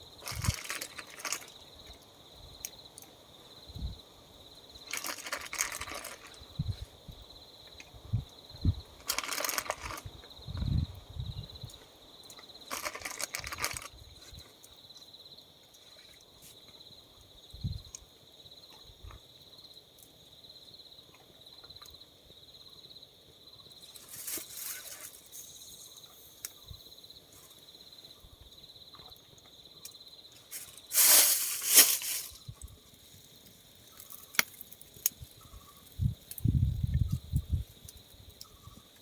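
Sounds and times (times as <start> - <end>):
insects trilling: 0.0 - 39.0
rustling bursts: 30.5 - 32.4.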